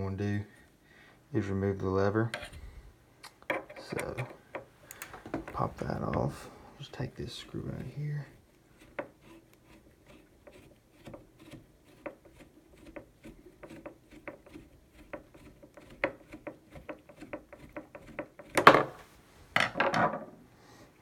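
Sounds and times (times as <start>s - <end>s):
screwdriver metal clicks: 4.9s - 5.2s.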